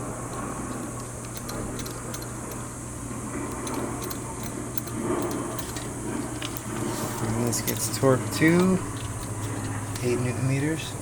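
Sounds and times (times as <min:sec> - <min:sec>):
steady low hum: 0:00.0 - 0:11.0
hand tool metallic ticks: 0:00.3 - 0:02.7, 0:03.5 - 0:05.9, 0:07.5 - 0:10.2.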